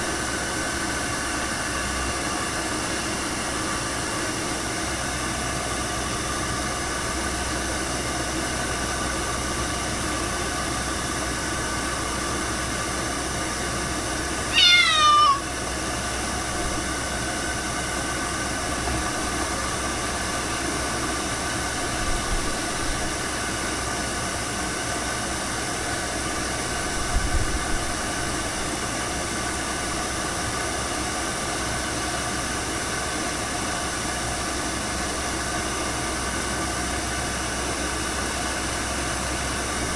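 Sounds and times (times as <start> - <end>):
steady whirring noise: 0.0 - 39.9
cat meowing: 14.5 - 15.5.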